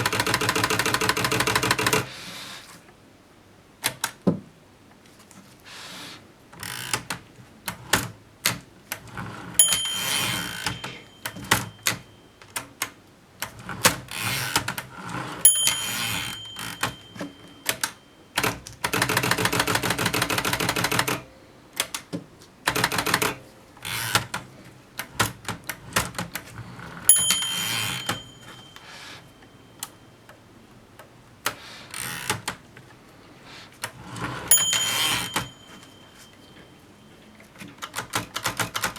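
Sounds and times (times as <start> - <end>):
typewriter margin bell: 0.0 - 2.0, 9.6 - 12.8, 15.5 - 21.2, 27.1 - 30.3, 34.5 - 38.9
typewriter keys striking: 37.8 - 38.9.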